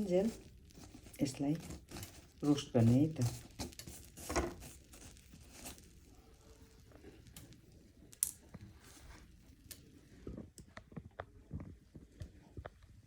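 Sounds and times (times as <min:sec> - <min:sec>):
ginger clicking while roasting in pan: 0:00.0 - 0:05.9.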